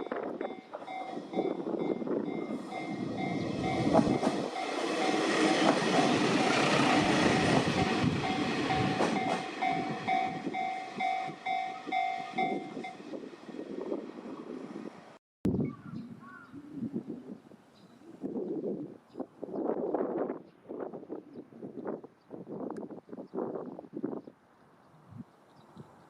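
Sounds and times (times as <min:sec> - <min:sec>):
train rumble: 0:00.0 - 0:15.2
level crossing bell ringing: 0:08.2 - 0:13.0.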